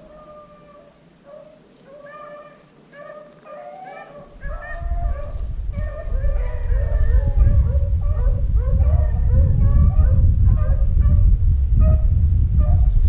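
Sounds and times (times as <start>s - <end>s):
dogs baying and yelping: 0.0s - 12.9s
low rumble: 4.4s - 13.0s.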